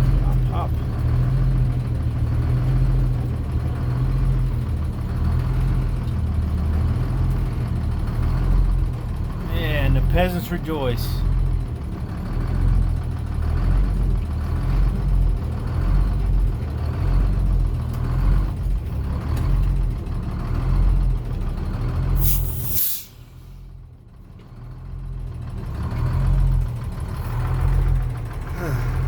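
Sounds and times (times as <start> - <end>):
diesel truck engine rumbling: 0.0 - 29.0
air brake hiss: 22.2 - 23.6.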